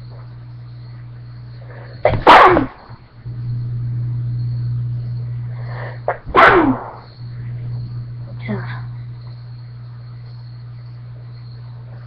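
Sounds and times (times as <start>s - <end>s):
steady low hum: 0.0s - 12.0s
person sneezing: 2.0s - 2.7s, 6.1s - 7.0s.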